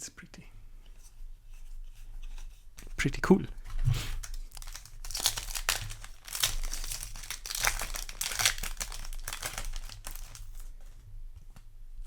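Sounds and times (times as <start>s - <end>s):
foil wrapper crinkling: 3.6s - 10.9s.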